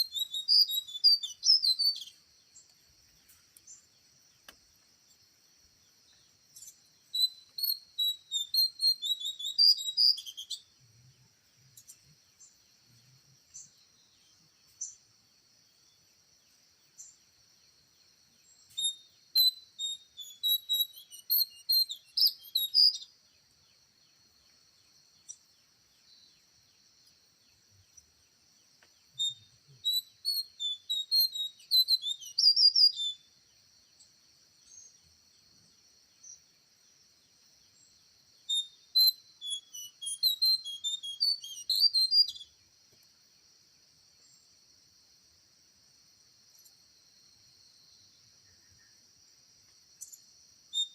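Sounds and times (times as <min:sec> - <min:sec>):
bird chirping and whistling: 0:00.0 - 0:02.1, 0:07.1 - 0:10.6, 0:18.8 - 0:23.0, 0:29.2 - 0:33.2, 0:38.5 - 0:42.5.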